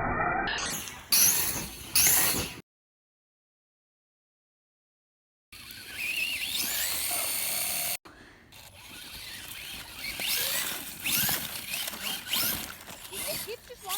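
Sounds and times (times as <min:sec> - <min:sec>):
electric motor whining: 0:05.6 - 0:13.9.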